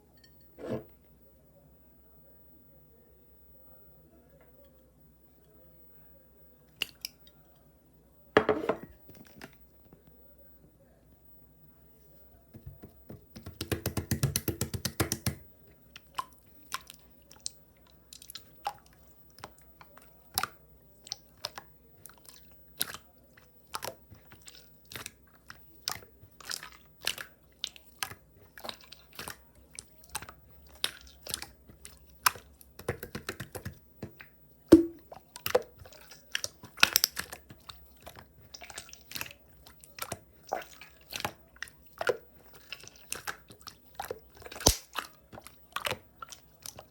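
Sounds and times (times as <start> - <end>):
slime clicking and popping: 36.4 - 37.4, 44.5 - 45.1.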